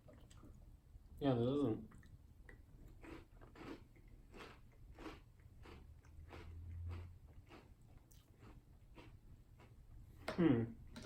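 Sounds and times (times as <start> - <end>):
chewing cereal: 1.9 - 10.0.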